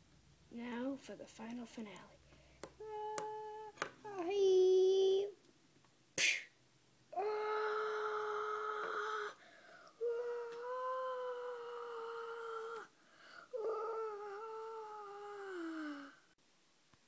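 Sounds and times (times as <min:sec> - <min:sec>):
breaths: 0:02.2 - 0:02.8, 0:09.2 - 0:10.0, 0:12.8 - 0:13.6
person singing long notes: 0:13.5 - 0:16.2.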